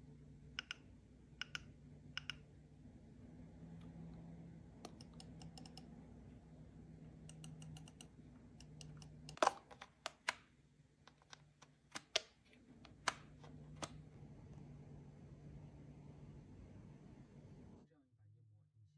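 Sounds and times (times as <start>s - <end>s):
mechanical keyboard typing: 4.8s - 5.9s, 7.2s - 10.4s.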